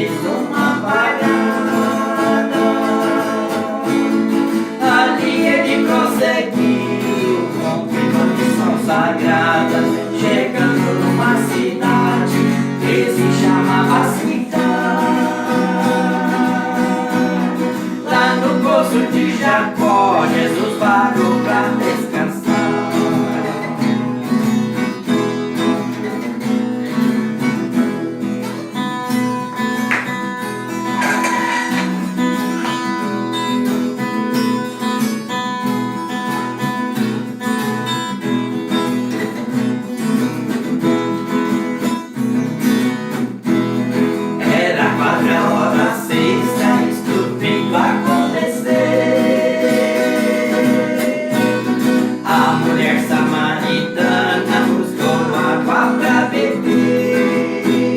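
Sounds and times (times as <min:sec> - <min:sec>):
person singing: 0:00.0 - 0:24.1, 0:30.8 - 0:32.0, 0:44.4 - 0:57.9
acoustic guitar strumming: 0:00.0 - 0:57.9.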